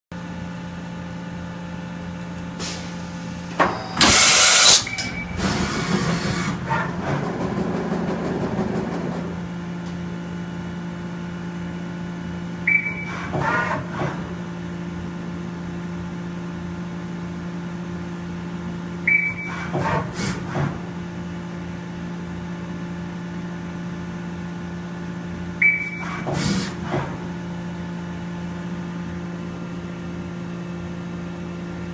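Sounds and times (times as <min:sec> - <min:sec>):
machining center humming: 0:02.3 - 0:20.1.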